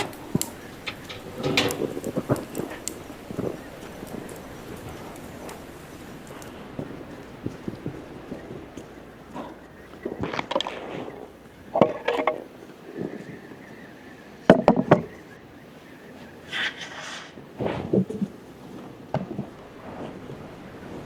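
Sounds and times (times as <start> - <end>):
objects knocking and clattering: 0.0 - 5.6.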